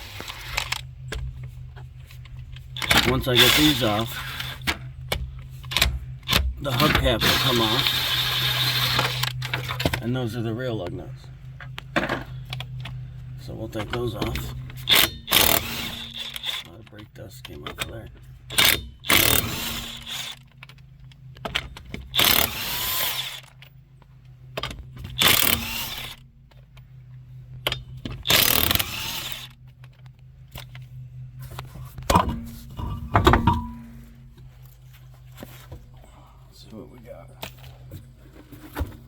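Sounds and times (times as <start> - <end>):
low hum: 0.0 - 39.0
impact wrench running: 2.8 - 10.0, 14.2 - 16.6, 18.5 - 20.8, 21.5 - 23.6, 24.6 - 26.2, 27.6 - 29.6, 32.0 - 34.2.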